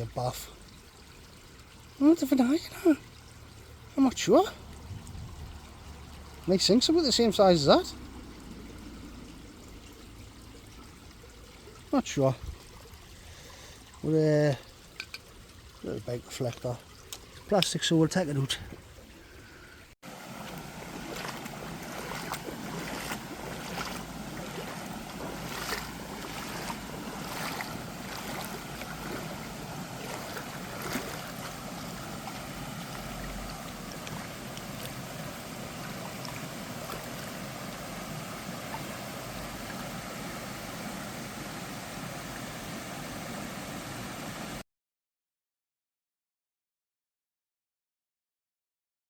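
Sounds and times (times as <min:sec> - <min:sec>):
rushing outdoor noise: 0:20.0 - 0:44.6.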